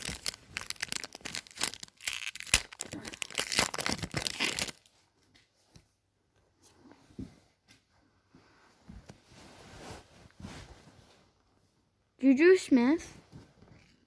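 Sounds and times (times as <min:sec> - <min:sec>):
wrapper tearing and crinkling: 0:00.0 - 0:04.9.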